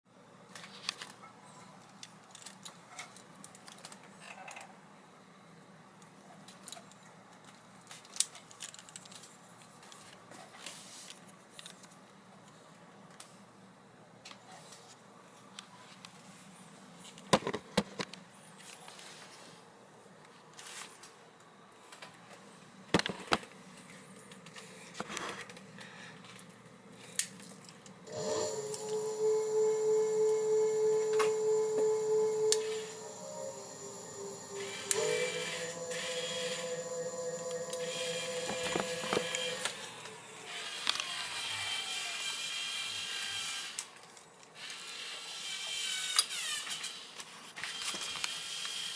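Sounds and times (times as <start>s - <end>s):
electric motor whining: 28.1s - 42.3s.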